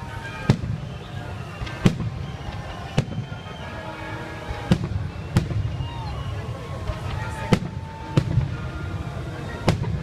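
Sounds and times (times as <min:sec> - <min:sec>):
firework booms: 0:00.0 - 0:03.4, 0:04.4 - 0:06.2, 0:06.8 - 0:09.0, 0:09.6 - 0:10.0
low fireworks rumble: 0:00.0 - 0:10.0.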